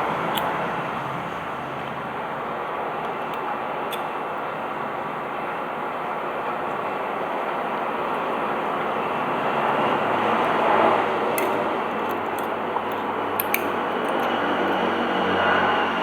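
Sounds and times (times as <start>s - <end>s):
hot air station airflow: 0.0s - 16.0s
metal tools clicking on circuit board: 11.4s - 14.8s.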